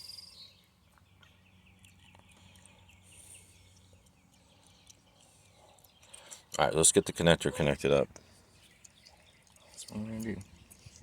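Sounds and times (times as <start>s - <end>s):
faint high chirping: 0.0s - 6.4s.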